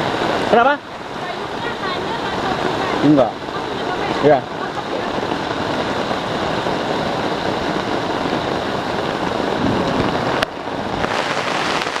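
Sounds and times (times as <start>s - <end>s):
heavy rain hissing: 0.0s - 12.0s.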